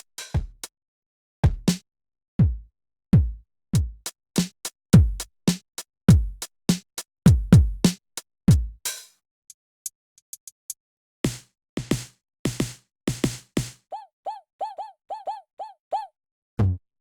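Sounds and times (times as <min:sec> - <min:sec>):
low kick drums: 0:01.4 - 0:01.7, 0:02.4 - 0:04.0, 0:05.0 - 0:05.2, 0:06.1 - 0:06.4, 0:07.3 - 0:07.9, 0:08.5 - 0:08.8.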